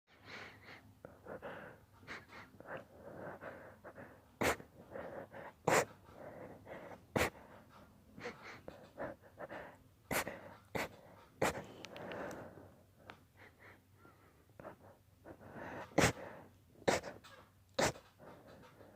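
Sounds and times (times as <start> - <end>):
breathy inhales and gasps: 8.2 - 17.1.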